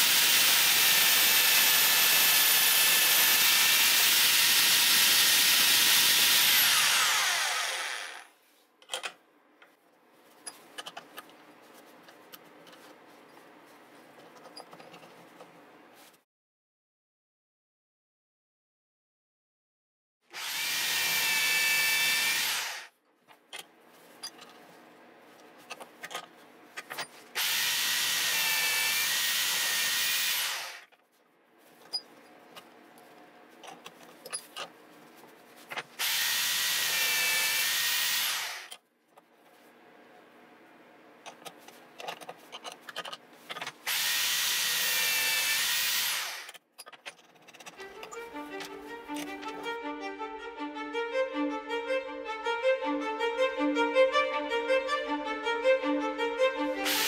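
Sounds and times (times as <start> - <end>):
electric power tool whining: 0.0 - 8.3, 20.3 - 22.9, 27.4 - 30.9, 36.0 - 38.8, 43.9 - 46.6, 56.8 - 57.0
workpiece handling clicks and knocks: 8.8 - 9.8, 10.4 - 11.4, 41.2 - 43.8, 46.5 - 49.6.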